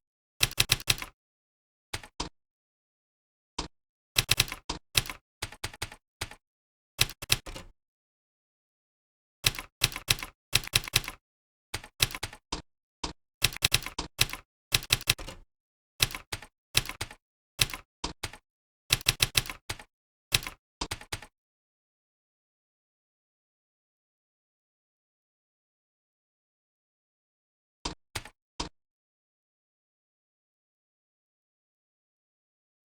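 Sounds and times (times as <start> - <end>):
typing on computer keyboard: 0.4 - 1.2, 2.0 - 2.3, 4.2 - 6.4, 7.0 - 7.7, 9.4 - 11.2, 11.8 - 12.6, 13.4 - 15.4, 16.0 - 21.3, 28.2 - 28.4.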